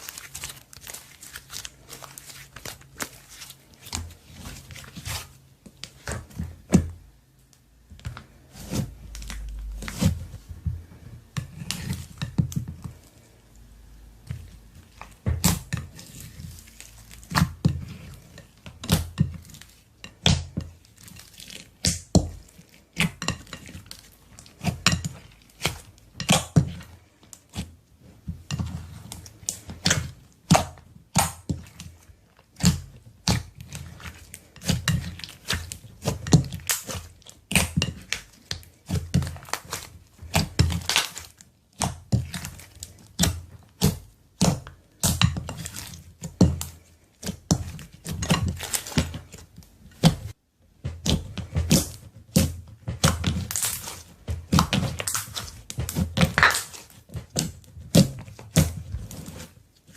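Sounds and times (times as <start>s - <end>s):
slime squished by hand: 51.0s - 59.5s.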